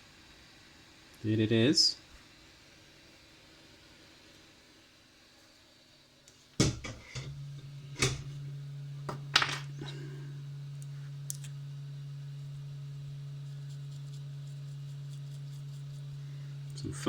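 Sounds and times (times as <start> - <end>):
steady low hum: 6.5 - 17.0
tools clattering on workbench: 9.3 - 9.7.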